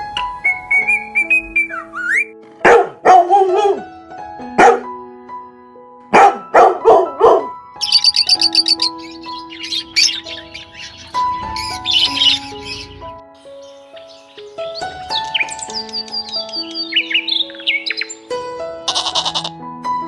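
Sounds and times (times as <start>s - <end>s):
music with whistled melody: 0.0s - 2.5s, 6.6s - 18.5s
dog barking: 2.6s - 3.8s, 4.6s - 4.9s, 6.1s - 7.6s
rapid high chirping: 7.8s - 18.3s.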